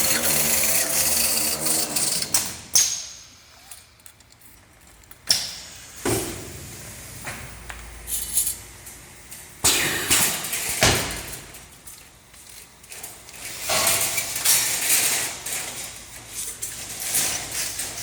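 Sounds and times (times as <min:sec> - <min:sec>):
machine rattling: 0:00.0 - 0:02.6
metal parts clinking: 0:08.1 - 0:08.6.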